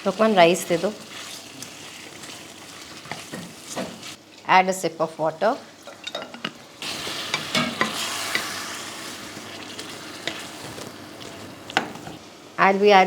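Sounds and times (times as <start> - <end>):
food sizzling in a pan: 0.0 - 4.4, 5.1 - 13.0
water splashing into hot pan: 6.8 - 11.9.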